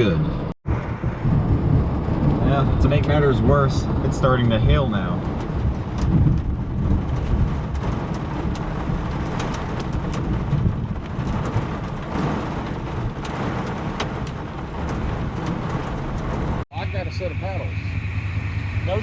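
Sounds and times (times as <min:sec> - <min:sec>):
strong wind rumbling: 0:00.0 - 0:19.0
hailstones ticking: 0:04.4 - 0:16.6.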